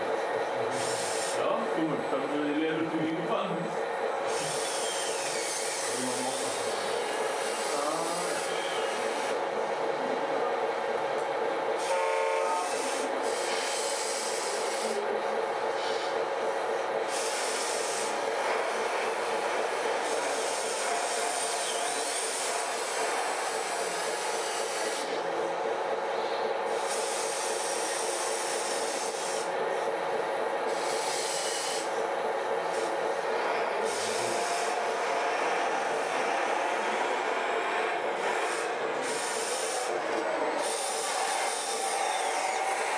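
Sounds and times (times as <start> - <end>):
model truck motors droning: 11.1 - 42.9.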